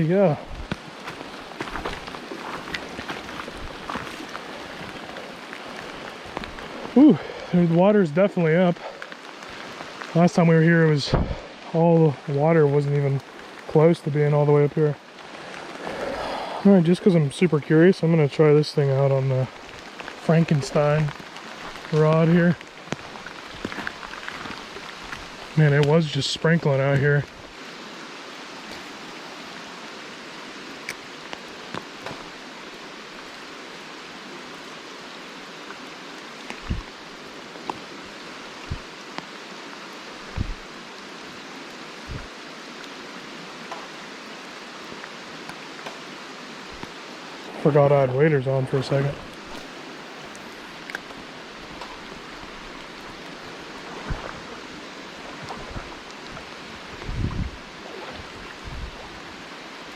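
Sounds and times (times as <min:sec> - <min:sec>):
rain hissing: 0:00.0 - 0:59.9
river water flowing: 0:00.0 - 0:59.9
low thumps: 0:40.3 - 0:40.6, 0:42.1 - 0:42.3.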